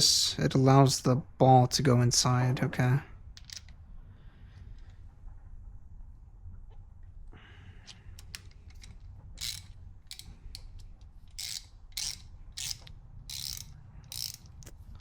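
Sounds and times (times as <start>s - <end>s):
ratchet pawl clicking: 8.2s - 14.7s.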